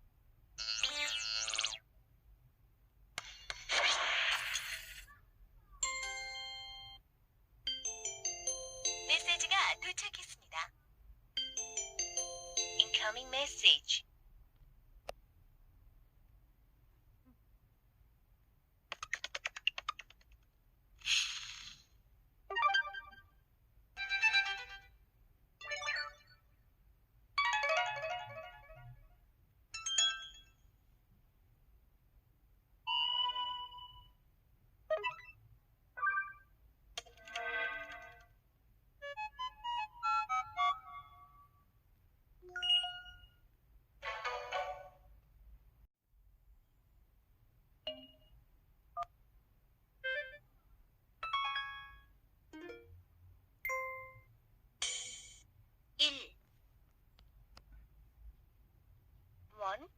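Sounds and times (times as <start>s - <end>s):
phone notification notes: 8.9s - 10.0s, 11.4s - 13.6s.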